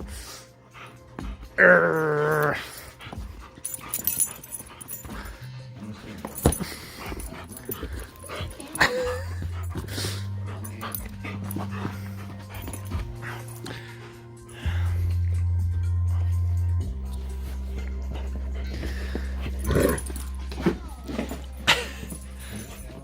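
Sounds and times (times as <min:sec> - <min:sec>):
background music with bass: 0:00.0 - 0:23.0
dog whining: 0:01.4 - 0:05.4, 0:06.1 - 0:14.2, 0:16.8 - 0:23.0
dog scuffling in play: 0:02.6 - 0:14.1, 0:16.9 - 0:23.0.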